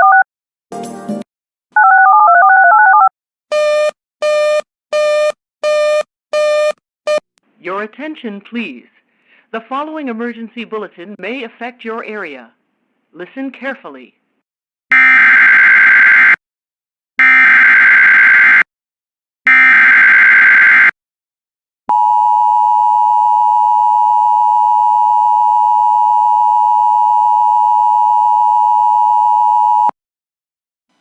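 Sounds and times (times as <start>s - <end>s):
two-tone attention signal: 3.5s - 7.2s.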